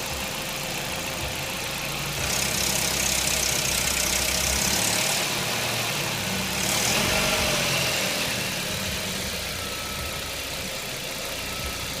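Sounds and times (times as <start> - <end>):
car engine running at low revs: 0.0 - 12.0.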